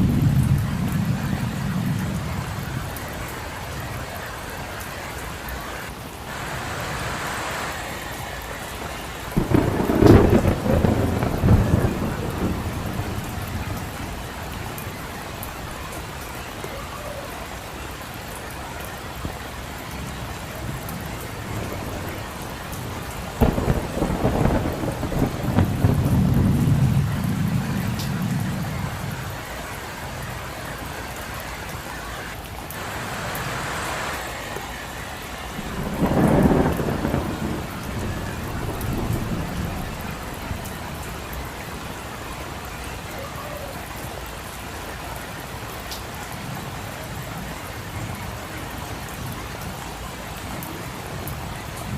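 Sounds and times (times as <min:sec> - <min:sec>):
thunder claps: 0:00.0 - 0:04.2, 0:08.7 - 0:16.6, 0:20.0 - 0:30.3, 0:32.7 - 0:41.9
steady rain: 0:00.0 - 0:51.9.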